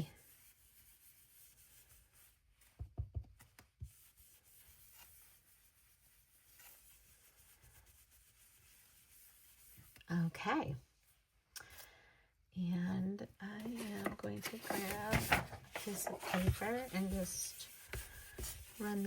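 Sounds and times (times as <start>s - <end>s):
brush rubbing on cardstock: 0.0s - 2.8s, 3.8s - 10.1s, 13.6s - 19.0s.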